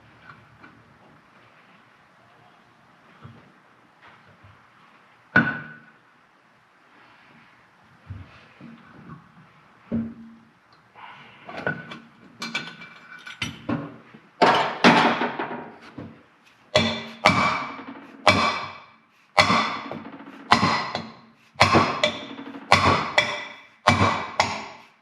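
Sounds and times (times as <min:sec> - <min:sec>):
hammer blows on metal: 0:16.8 - 0:24.9.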